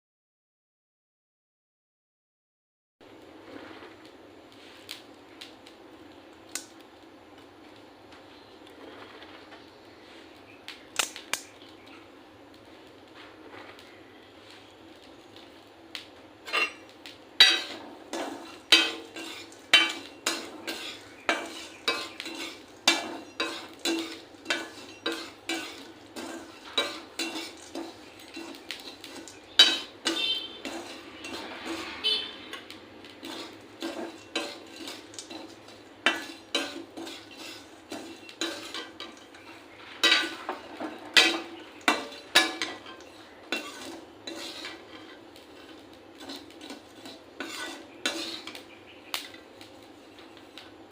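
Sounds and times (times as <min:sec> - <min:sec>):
metal spoon scraping a pan: 0:16.4 - 0:50.9.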